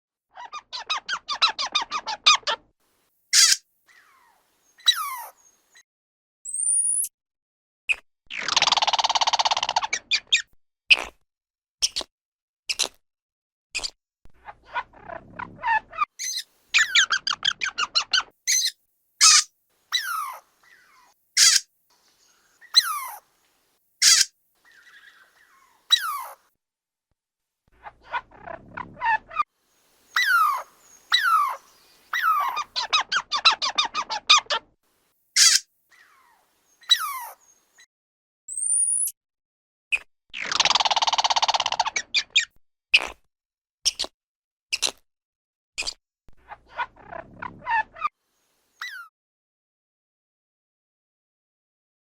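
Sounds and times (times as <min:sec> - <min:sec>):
squirrel chattering: 0:00.4 - 0:02.6, 0:03.4 - 0:04.2, 0:08.4 - 0:10.4, 0:14.7 - 0:21.6, 0:22.6 - 0:23.2, 0:24.0 - 0:26.4, 0:30.1 - 0:34.6, 0:35.4 - 0:36.1, 0:40.5 - 0:42.4
squirrel squealing: 0:00.4 - 0:02.6, 0:03.3 - 0:05.4, 0:14.7 - 0:21.7, 0:22.6 - 0:23.2, 0:24.0 - 0:26.4, 0:30.1 - 0:34.6, 0:35.4 - 0:37.4, 0:48.8 - 0:49.1
squirrel hissing: 0:03.3 - 0:05.3, 0:18.5 - 0:21.6, 0:24.0 - 0:26.4, 0:29.8 - 0:34.0, 0:35.4 - 0:37.4
squirrel calls falling in pitch: 0:24.0 - 0:24.3, 0:35.4 - 0:35.6.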